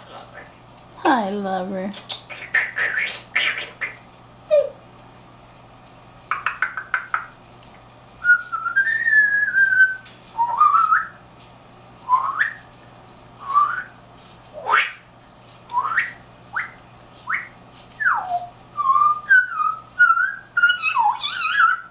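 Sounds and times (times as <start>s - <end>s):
parrot clicky chatter: 1.9s - 4.0s, 6.3s - 7.4s
parrot whistling: 2.1s - 4.8s, 8.2s - 11.2s, 12.0s - 12.7s, 13.4s - 14.0s, 14.6s - 15.0s, 15.7s - 21.9s.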